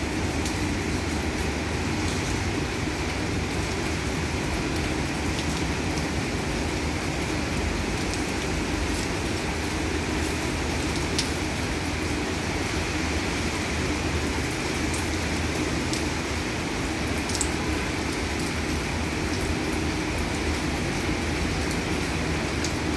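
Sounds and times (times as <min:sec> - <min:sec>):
heavy rain on roof: 0:00.0 - 0:22.9.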